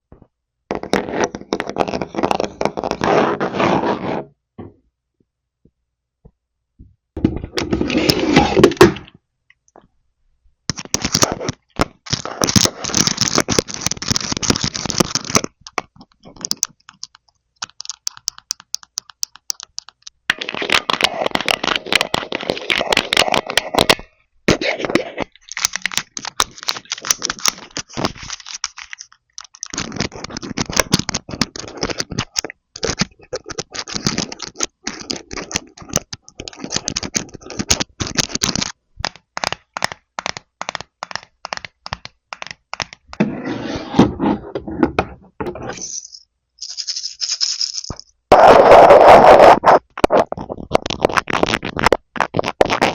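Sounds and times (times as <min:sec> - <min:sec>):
plastic crackling and scraping: 0:00.1 - 0:04.2, 0:07.2 - 0:09.2, 0:10.7 - 0:43.2, 0:44.1 - 0:52.9
plastic toy pieces clicking: 0:16.5 - 0:20.1, 0:46.0 - 0:48.1.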